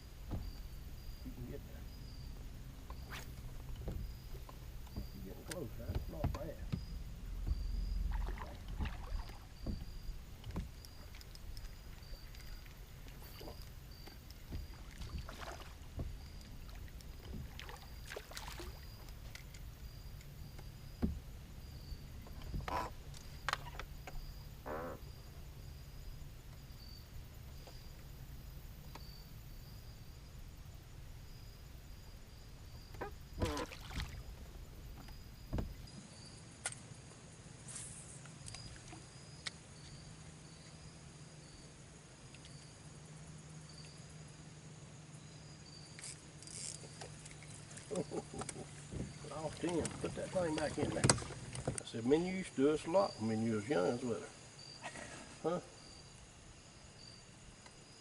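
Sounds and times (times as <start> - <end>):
insects chirring: 0.0 - 58.0
fishing gear knocks and rustles: 2.8 - 24.3.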